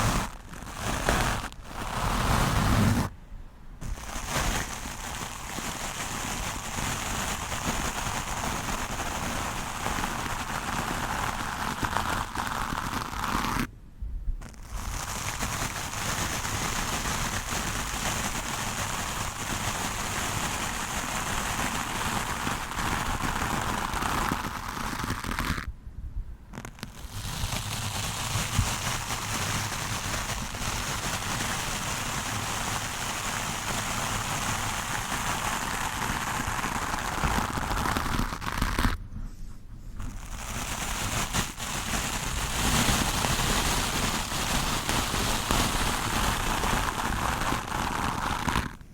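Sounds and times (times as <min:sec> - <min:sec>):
brush scratching over microphone: 0:00.0 - 0:03.1, 0:03.8 - 0:13.7, 0:26.5 - 0:48.8.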